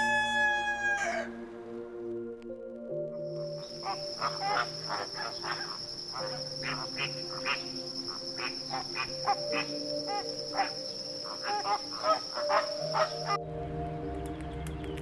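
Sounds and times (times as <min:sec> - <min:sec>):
soft sustained music notes: 0:00.0 - 0:15.0
high-pitched insect trill: 0:03.3 - 0:13.4
animal chirps: 0:03.6 - 0:13.4.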